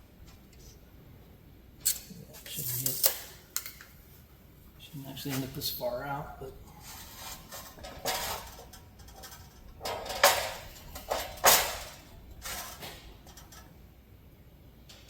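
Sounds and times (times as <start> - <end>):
metal clanks and scrapes: 6.7 - 13.8.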